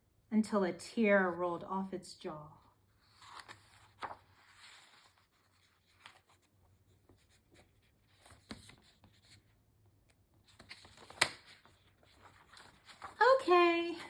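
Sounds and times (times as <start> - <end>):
paper pages rustling: 3.0 - 14.0.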